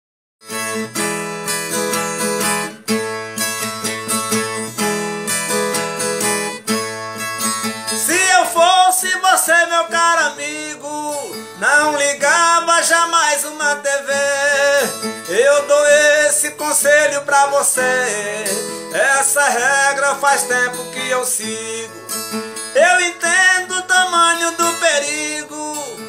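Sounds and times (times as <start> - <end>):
plucked guitar: 0.4 - 26.0
person singing: 8.0 - 26.0.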